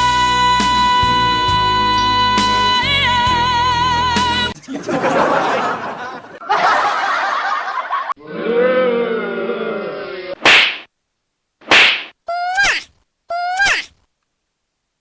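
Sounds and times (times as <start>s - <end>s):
laughter-like noise: 4.5s - 8.2s
pitched voice-like sound: 12.3s - 14.0s.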